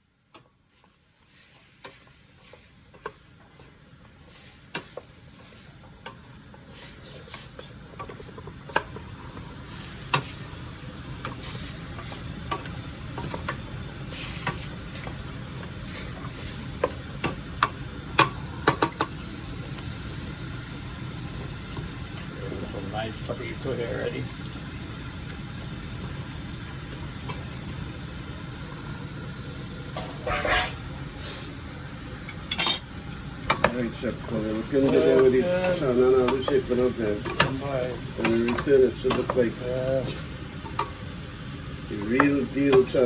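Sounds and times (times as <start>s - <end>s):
food sizzling in a pot: 0.6s - 43.0s
utensil scraping against pot: 30.0s - 30.8s.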